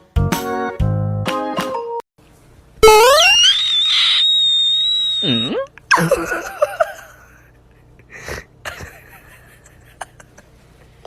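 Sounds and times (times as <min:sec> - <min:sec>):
loud high-pitched scream: 0:02.8 - 0:05.6
wavering lower cries: 0:02.8 - 0:05.7.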